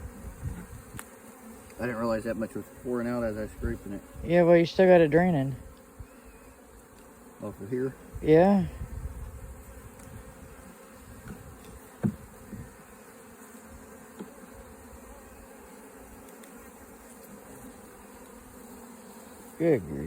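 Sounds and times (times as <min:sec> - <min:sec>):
honeybees buzzing: 0:00.0 - 0:20.0
faint ticks: 0:00.9 - 0:01.8, 0:16.2 - 0:17.3.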